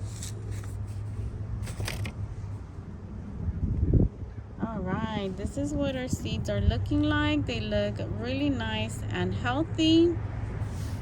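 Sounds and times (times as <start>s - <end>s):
wind buffeting microphone: 1.7s - 11.0s.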